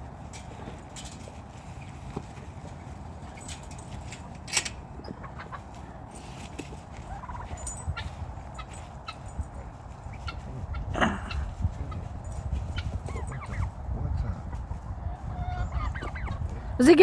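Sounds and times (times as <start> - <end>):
turkey gobbling: 5.1 - 5.7, 7.0 - 9.3, 10.1 - 12.0, 12.7 - 13.8, 14.4 - 16.5.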